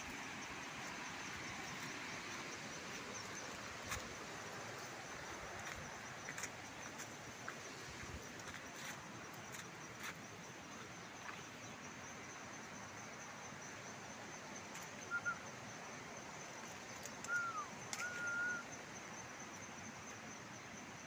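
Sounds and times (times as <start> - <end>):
outdoor background hiss: 0.0 - 21.0
bird whistling: 15.1 - 15.4, 17.3 - 18.7.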